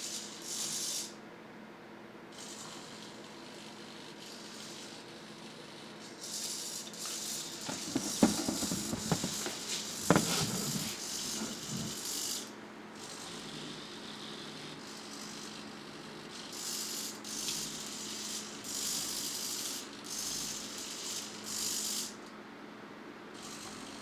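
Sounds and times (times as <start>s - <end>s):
plastic clicks and knocks: 7.7s - 11.9s.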